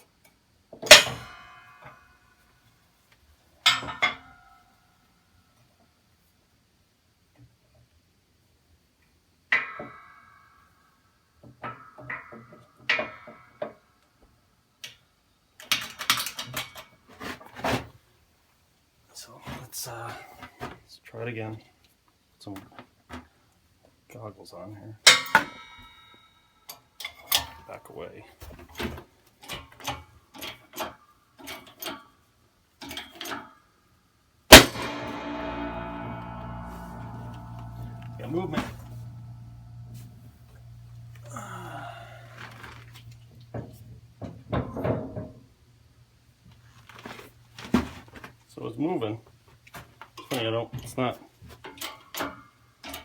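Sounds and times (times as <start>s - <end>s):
rattling metal clatter: 34.5s - 41.5s
loud sharp metal bang: 34.5s - 42.3s
sharp ringing metal strikes: 34.5s - 42.3s
steel tools clanking: 34.5s - 43.3s.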